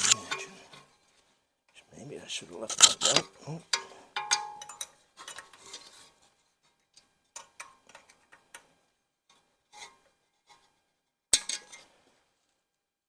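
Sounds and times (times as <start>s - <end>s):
metal tools clinking: 0.0s - 0.9s, 2.7s - 5.9s.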